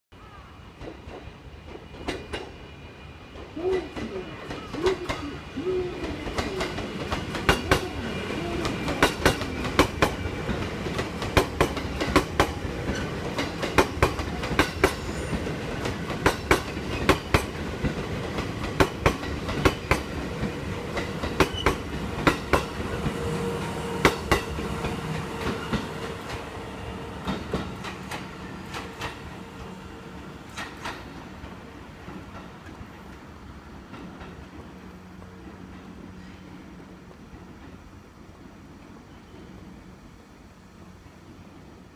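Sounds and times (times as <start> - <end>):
train rumble: 0.3 - 41.9
train wheels clattering over rail joints: 6.3 - 8.0, 8.6 - 23.2, 27.2 - 29.7, 30.5 - 32.8.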